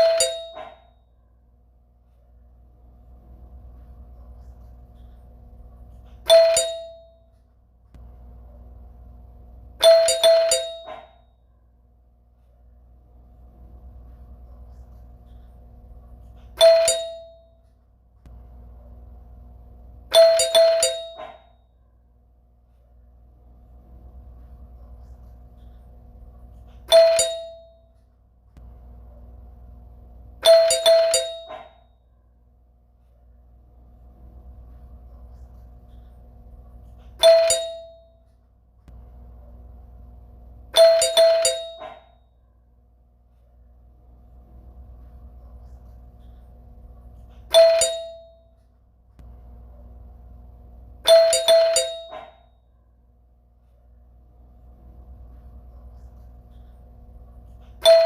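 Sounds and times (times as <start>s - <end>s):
doorbell chime ringing: 0.0s - 0.9s, 6.3s - 7.3s, 9.8s - 11.1s, 16.6s - 17.6s, 20.1s - 21.4s, 26.9s - 27.9s, 30.4s - 31.8s, 37.2s - 38.2s, 40.7s - 42.1s, 47.5s - 48.6s, 51.0s - 52.5s.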